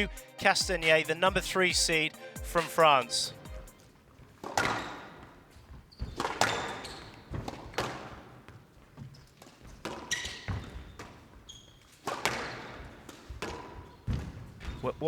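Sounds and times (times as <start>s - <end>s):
court shoes squeaking: 2.9s - 15.0s
squash ball cracking off rackets: 3.7s - 14.8s.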